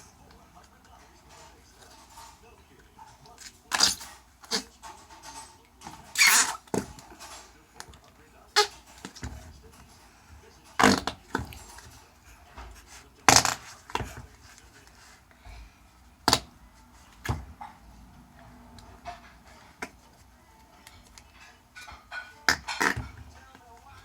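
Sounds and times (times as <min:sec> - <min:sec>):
noise putty fart-like squelches: 0:06.2 - 0:06.6.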